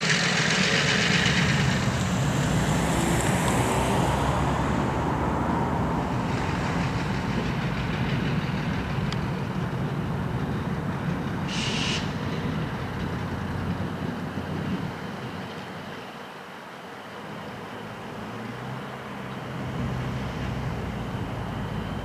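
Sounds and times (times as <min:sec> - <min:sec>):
diesel locomotive engine running: 0:00.0 - 0:22.0
hiss: 0:11.5 - 0:12.4.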